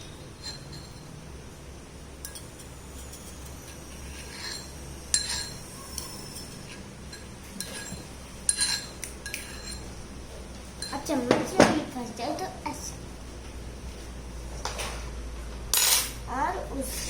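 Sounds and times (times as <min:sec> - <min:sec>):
metal spoon clinking on container: 0:00.0 - 0:01.1, 0:02.2 - 0:09.9, 0:10.8 - 0:11.1
faint steady hum: 0:00.0 - 0:17.0.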